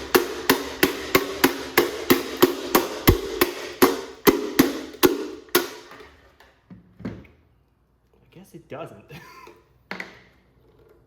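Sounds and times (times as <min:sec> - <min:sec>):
hammer-like knocks on plastic part: 0:00.0 - 0:05.9.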